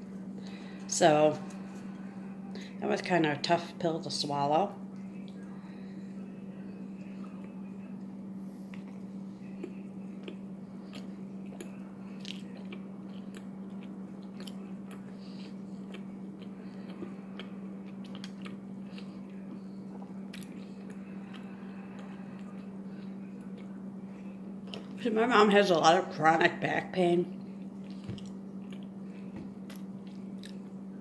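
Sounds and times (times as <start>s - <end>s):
low electrical hum: 0.0s - 31.0s
person chewing food: 7.0s - 25.0s, 27.3s - 31.0s.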